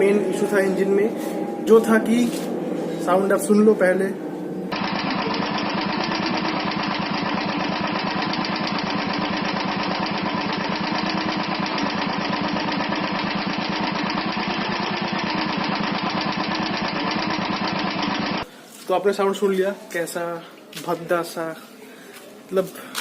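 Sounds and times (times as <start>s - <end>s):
engine lifter ticking: 4.7s - 18.5s
motorcycle engine running: 4.7s - 18.5s.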